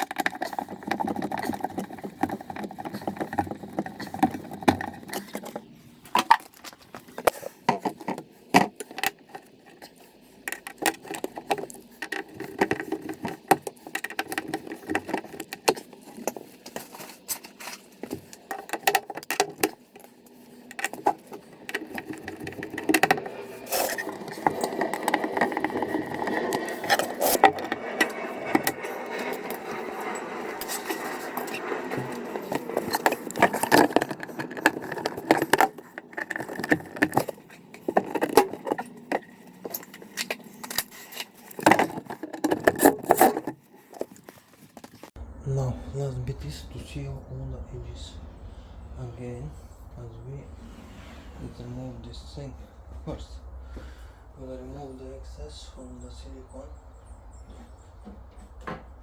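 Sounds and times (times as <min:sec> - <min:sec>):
hand tools and metal fittings clicking: 0:00.0 - 0:45.2.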